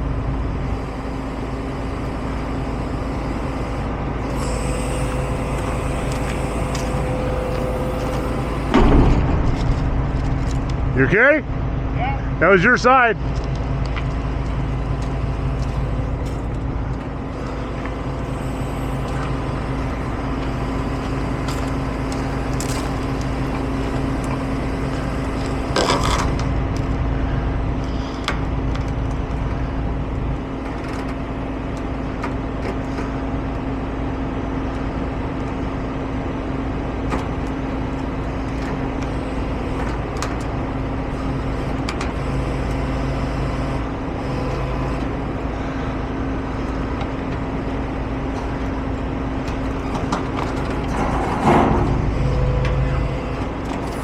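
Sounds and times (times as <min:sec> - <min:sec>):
heavy truck engines running: 0:00.0 - 0:54.0
knocks and creaks: 0:05.6 - 0:11.0.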